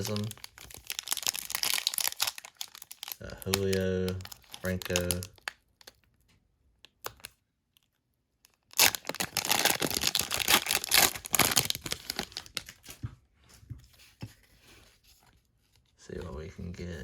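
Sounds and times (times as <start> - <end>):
card pack wrapper tearing: 0.0 - 6.0, 8.5 - 12.8.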